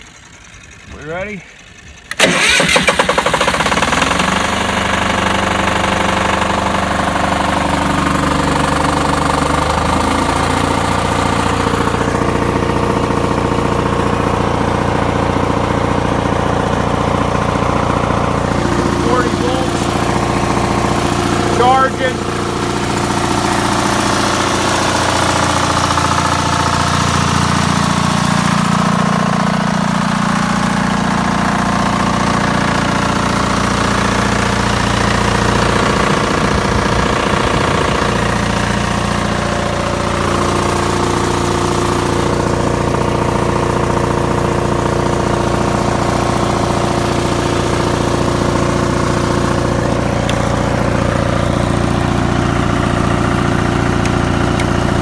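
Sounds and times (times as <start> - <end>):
diesel generator engine running: 0.0 - 55.0.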